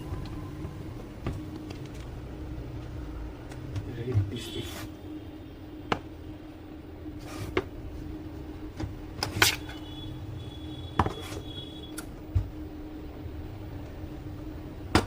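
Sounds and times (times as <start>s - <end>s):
low hum: 0.0s - 4.3s.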